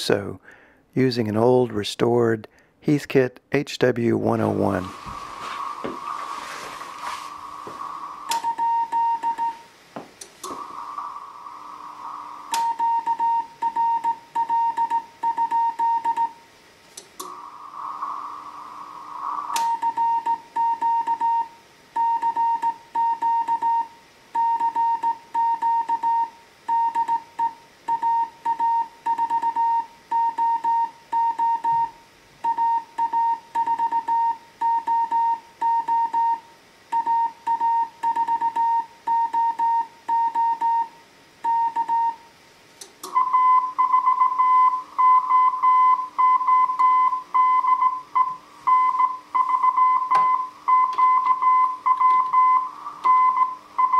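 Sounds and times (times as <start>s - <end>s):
higher-pitched keyed tone: 4.7s - 9.7s, 17.2s - 21.5s
morse code tone: 5.6s - 9.7s, 10.5s - 16.4s, 19.0s - 31.9s, 43.1s - 53.9s
click: 16.9s - 17.4s, 42.8s - 43.2s.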